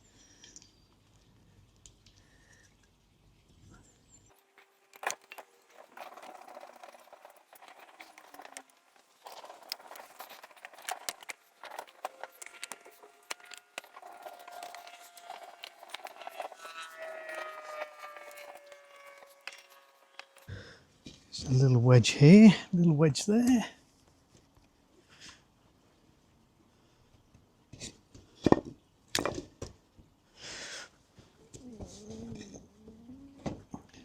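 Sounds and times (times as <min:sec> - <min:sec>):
scraping squeaks: 0:04.3 - 0:20.5.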